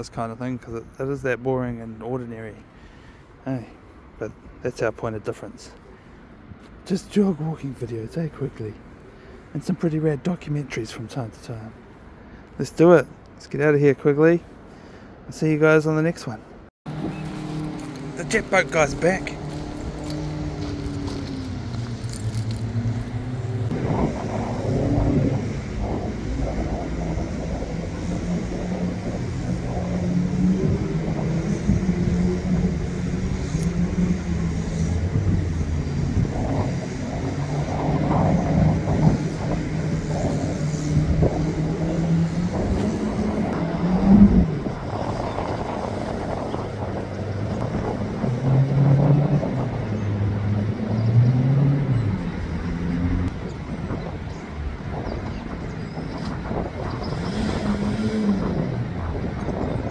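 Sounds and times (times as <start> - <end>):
boat engine revving: 16.9 - 53.4, 56.5 - 59.9.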